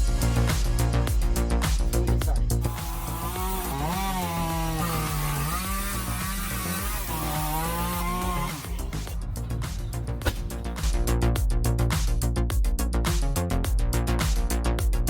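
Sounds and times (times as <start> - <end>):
background music: 0.0 - 15.0
chainsaw cutting wood: 0.2 - 9.1.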